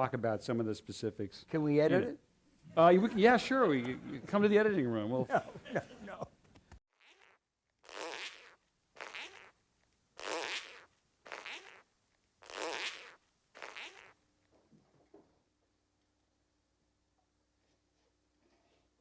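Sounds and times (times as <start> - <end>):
short raspy noise bursts: 7.0 - 9.6, 10.2 - 14.2.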